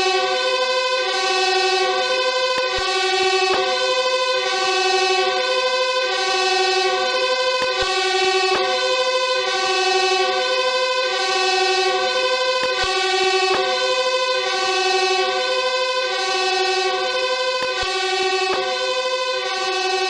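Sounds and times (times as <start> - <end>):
fire engine two-tone siren: 0.0 - 20.0.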